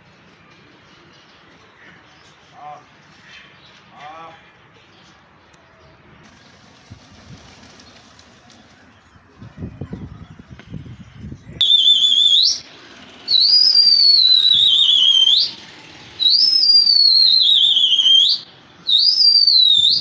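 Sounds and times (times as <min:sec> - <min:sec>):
warbling whistle blasts: 0:11.6 - 0:20.0.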